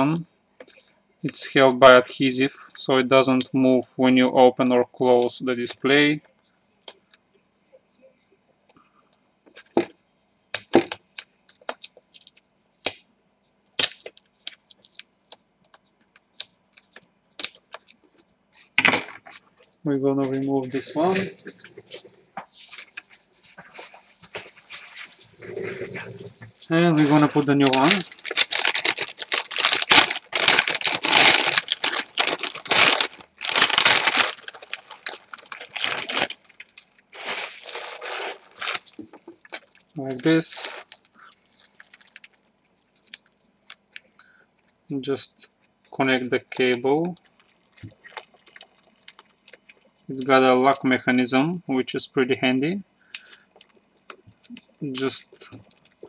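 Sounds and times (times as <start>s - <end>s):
plastic packaging crinkling: 10.8s - 12.4s, 20.6s - 21.8s, 22.6s - 44.0s, 46.4s - 50.0s, 53.2s - 56.0s
packaging tearing: 26.9s - 42.4s, 47.4s - 49.7s.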